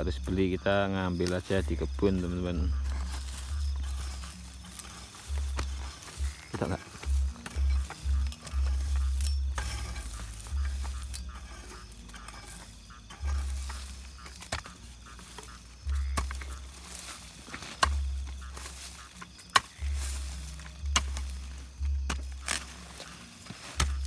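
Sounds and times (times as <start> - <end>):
dry leaves and twigs crackling: 0.0 - 24.0.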